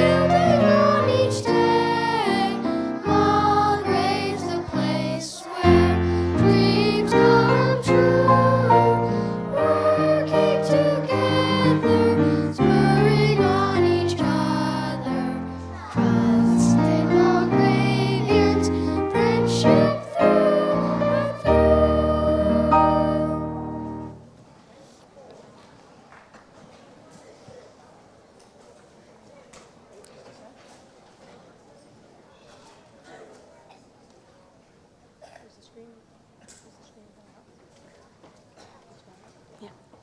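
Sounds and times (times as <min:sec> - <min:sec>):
instrumental accompaniment: 0:00.0 - 0:04.3, 0:05.8 - 0:24.2
children singing: 0:00.0 - 0:24.2.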